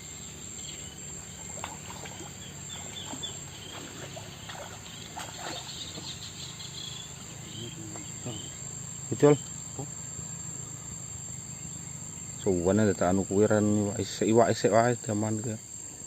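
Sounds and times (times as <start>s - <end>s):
insects droning: 0.0s - 16.0s.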